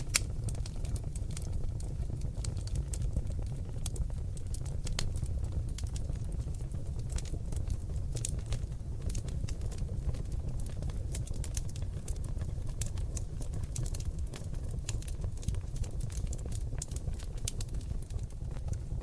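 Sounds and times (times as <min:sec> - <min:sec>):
logs crackling and popping in fire: 0:00.0 - 0:19.0
low rumble of fire: 0:00.0 - 0:19.0.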